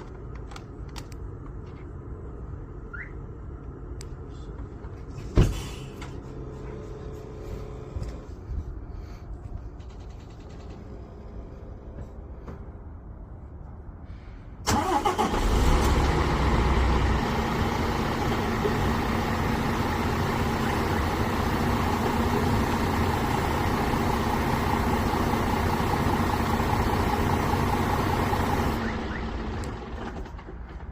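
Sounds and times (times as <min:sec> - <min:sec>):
truck diesel engine starting and idling: 0:05.1 - 0:11.9, 0:14.2 - 0:30.9.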